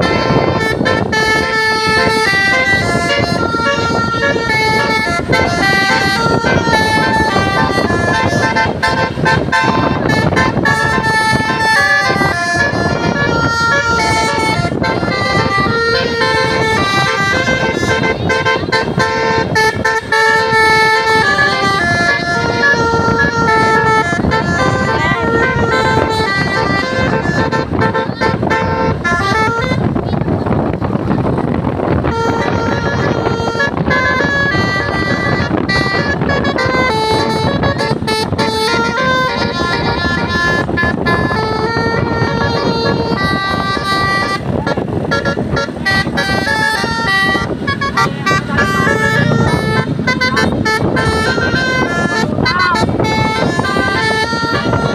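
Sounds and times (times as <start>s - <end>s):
multi-tone bus horn tune: 0.0s - 54.9s
steady low rumble: 0.0s - 54.9s
vehicle noise: 0.0s - 54.9s.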